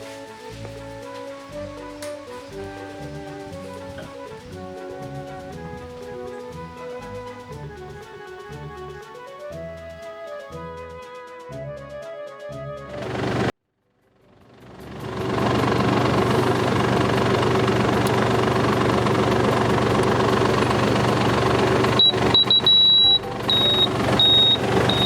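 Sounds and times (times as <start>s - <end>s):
tractor engine running: 0.0s - 10.0s, 12.9s - 13.5s, 14.2s - 25.0s
background music: 0.0s - 13.1s, 22.3s - 25.0s
high-pitched warning beeps: 21.9s - 25.0s.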